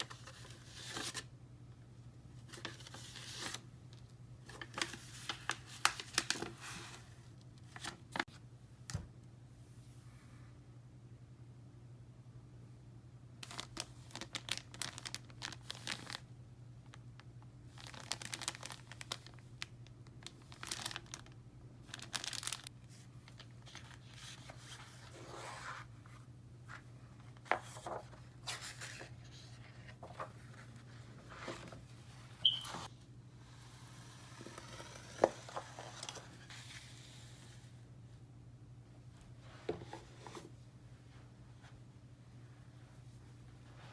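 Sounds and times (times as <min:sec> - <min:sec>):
packaging tearing and crinkling: 0:13.4 - 0:16.2, 0:17.8 - 0:19.4, 0:20.2 - 0:21.3, 0:21.9 - 0:22.7.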